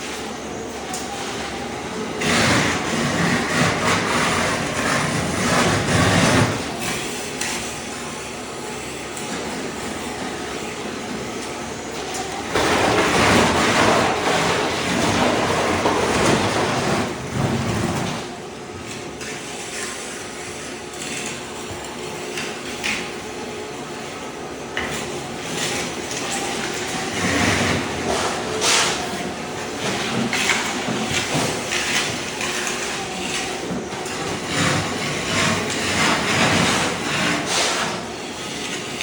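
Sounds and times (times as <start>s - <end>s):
floor scraper grinding mortar: 0.0s - 39.0s.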